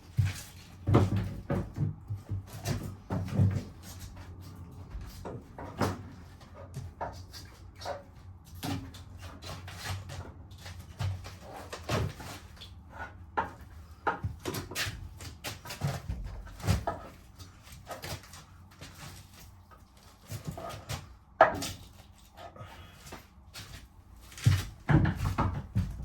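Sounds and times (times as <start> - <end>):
timber battens knocking and clattering: 0.0 - 22.2, 23.6 - 26.0.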